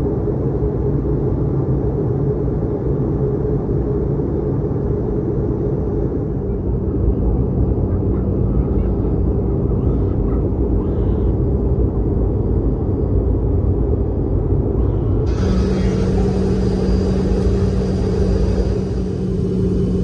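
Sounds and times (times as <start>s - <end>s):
jet engines rumbling in cabin: 0.0s - 20.0s.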